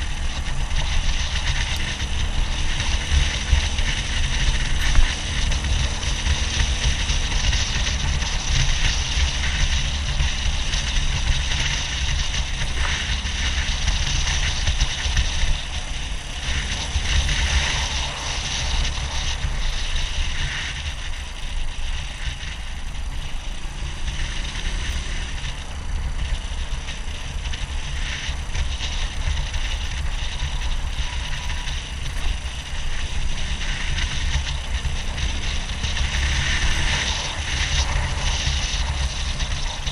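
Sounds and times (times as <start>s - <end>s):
motorcycle engine running: 0.0s - 39.9s
motorcycle rattles and clicks: 0.0s - 39.9s
wind rushing over microphone: 0.0s - 39.9s.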